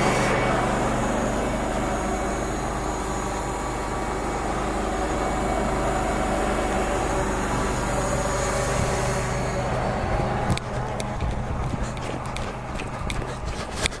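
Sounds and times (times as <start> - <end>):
engine idling hum: 0.0 - 14.0.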